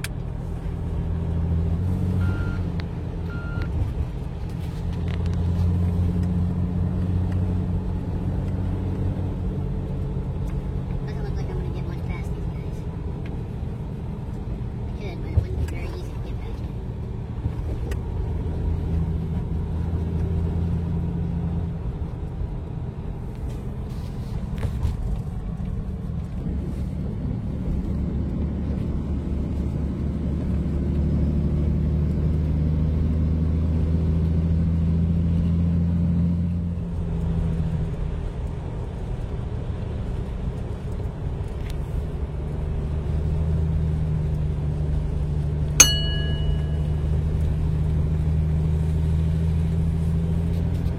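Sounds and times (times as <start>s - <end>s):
truck diesel engine droning: 0.0s - 17.5s, 43.2s - 50.9s
sharp click with ringing tone: 45.8s - 47.0s.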